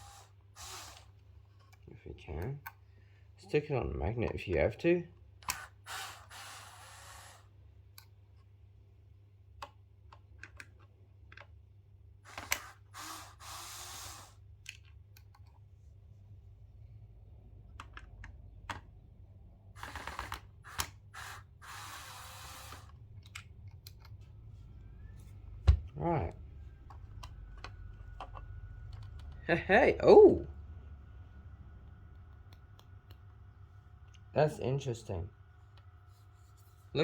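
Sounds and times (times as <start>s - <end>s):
faint low hum: 14.4s - 20.2s, 22.8s - 37.0s.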